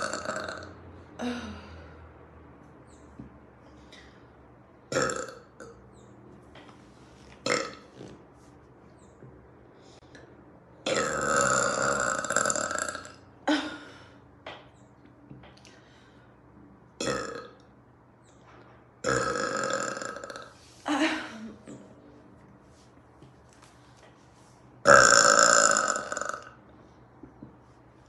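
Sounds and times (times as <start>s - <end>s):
woman belching: 0.0s - 1.6s, 4.9s - 5.7s, 7.4s - 7.8s, 10.8s - 13.8s, 17.0s - 17.6s, 19.0s - 21.8s, 24.9s - 26.6s.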